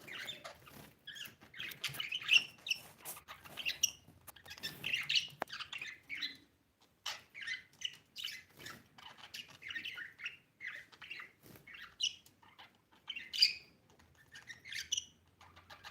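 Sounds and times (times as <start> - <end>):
budgie chirping: 0.0 - 6.4.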